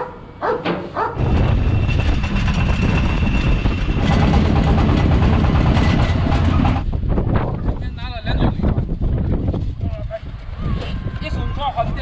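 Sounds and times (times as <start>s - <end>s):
dog barking: 0.0s - 1.2s
wind: 0.0s - 12.0s
low engine rumble: 1.2s - 7.1s.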